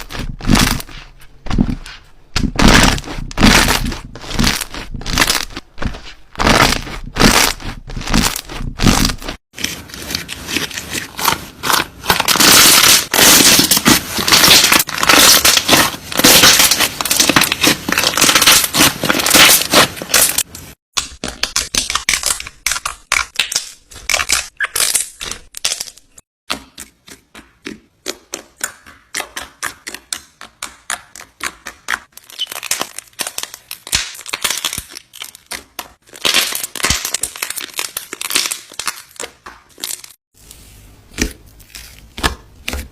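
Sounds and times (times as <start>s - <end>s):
slime crackling and popping: 0.1s - 0.9s, 11.2s - 26.2s, 32.1s - 40.2s.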